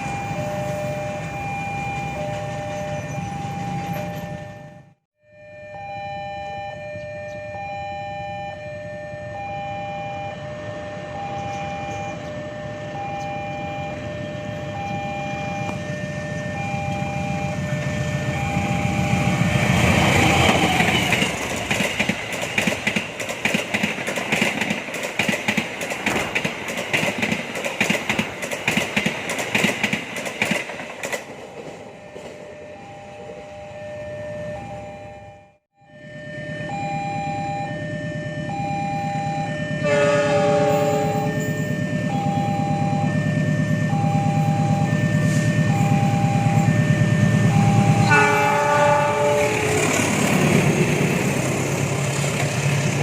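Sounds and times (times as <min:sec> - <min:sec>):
level crossing alarm ringing: 0:00.0 - 0:23.2, 0:31.6 - 0:52.2
train wheels clattering: 0:20.2 - 0:32.4.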